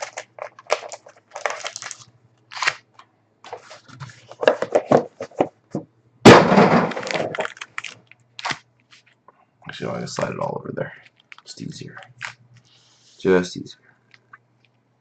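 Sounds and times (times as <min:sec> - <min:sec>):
cardboard box crinkling: 0:00.0 - 0:02.8, 0:06.9 - 0:09.1
cardboard tearing crack: 0:00.0 - 0:02.9, 0:06.3 - 0:09.0
packaging rustling: 0:00.0 - 0:05.5, 0:06.7 - 0:09.2, 0:11.0 - 0:12.7.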